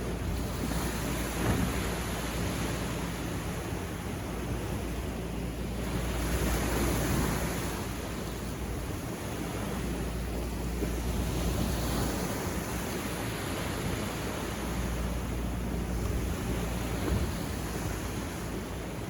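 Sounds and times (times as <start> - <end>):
waves breaking on beach: 0.0 - 19.0
wind rumble on microphone: 0.0 - 19.0.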